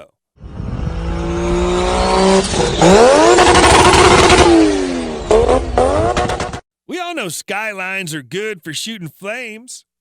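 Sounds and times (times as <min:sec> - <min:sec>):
car engine revving: 0:00.4 - 0:06.6.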